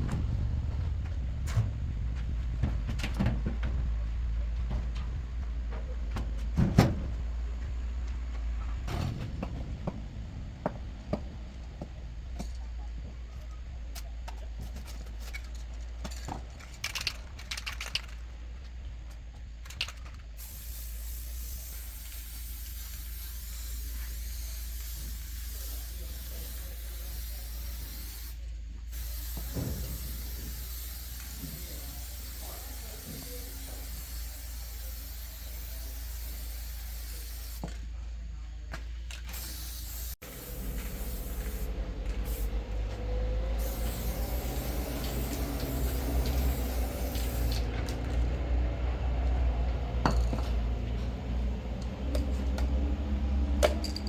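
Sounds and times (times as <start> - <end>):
constant low hum: 0.0 - 26.6, 27.3 - 54.0
steady spraying hiss: 20.2 - 37.7, 39.2 - 50.7.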